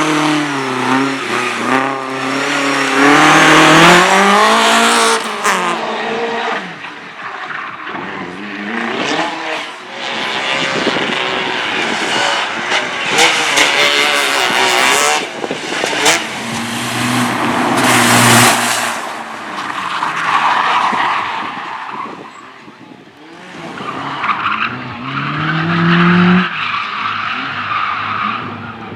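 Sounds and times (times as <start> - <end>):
race car engines revving: 0.0 - 28.9
tyres squealing and skidding: 10.5 - 28.9.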